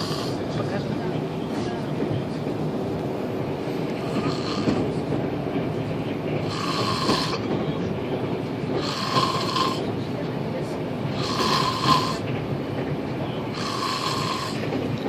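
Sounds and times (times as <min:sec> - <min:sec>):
man snoring: 0:00.0 - 0:00.4, 0:06.4 - 0:07.4, 0:08.8 - 0:09.8, 0:11.1 - 0:12.2, 0:13.5 - 0:14.6
train carriage rumble: 0:00.0 - 0:15.0.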